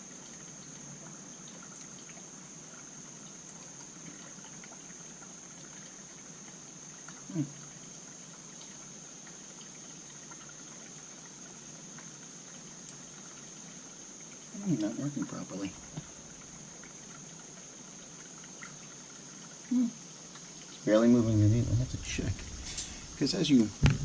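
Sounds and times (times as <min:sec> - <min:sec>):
low background hiss: 0:00.0 - 0:24.0
person humming murmur: 0:19.7 - 0:20.0
faint high whine: 0:20.8 - 0:24.0
small metal parts clicking: 0:22.6 - 0:23.1.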